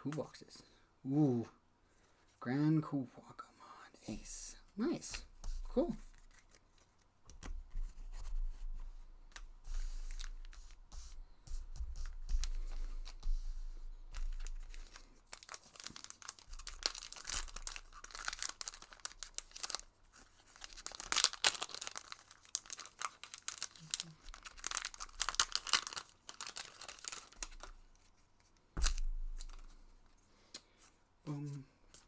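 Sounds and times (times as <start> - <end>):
cards being handled: 5.0 - 30.2
foil wrappers crinkling and tearing: 14.1 - 28.0, 28.8 - 29.7.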